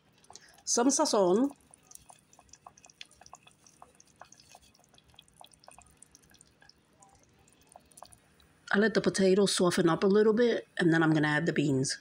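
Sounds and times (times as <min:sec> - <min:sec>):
pot of sauce simmering: 0:00.0 - 0:08.7.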